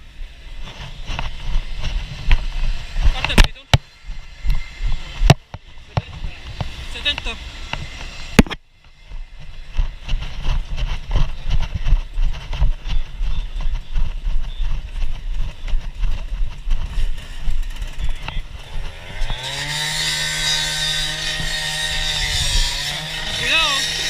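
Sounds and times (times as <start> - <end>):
engine revving at high speed: 1.6 - 8.6, 16.9 - 24.0.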